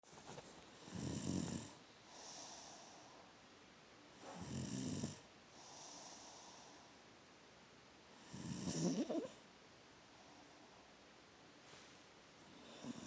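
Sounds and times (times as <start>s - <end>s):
person snoring like a pig: 0.8s - 1.8s, 8.2s - 9.4s, 12.6s - 13.0s.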